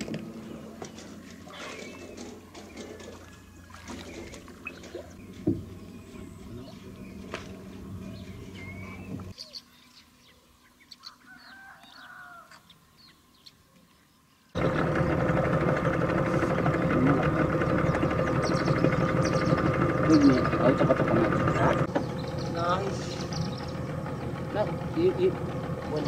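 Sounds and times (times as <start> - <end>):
boat motor running: 0.0 - 9.4, 14.6 - 26.0
birds chirping and calling: 0.0 - 26.0.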